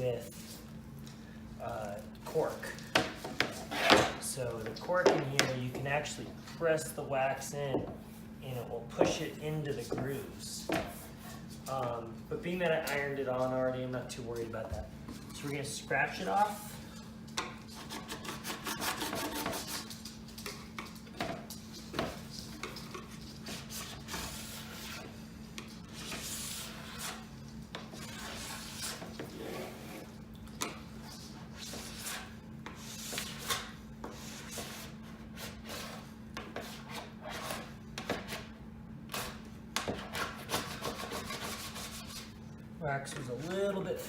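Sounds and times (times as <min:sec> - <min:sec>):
scraper scratching wax off board: 0:25.8 - 0:27.3, 0:40.0 - 0:42.3.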